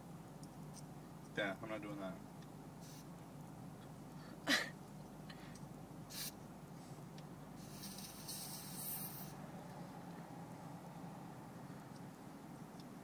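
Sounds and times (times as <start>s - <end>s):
gas hissing from canister: 6.1s - 6.4s, 7.6s - 9.4s.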